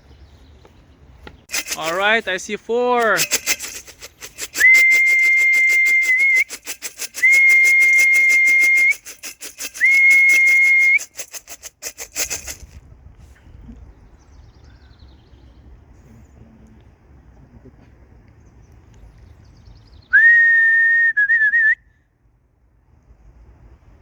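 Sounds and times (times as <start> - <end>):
fast rattle of clicks: 1.5 - 12.8
long whistle blasts: 4.3 - 11.2, 20.1 - 22.0.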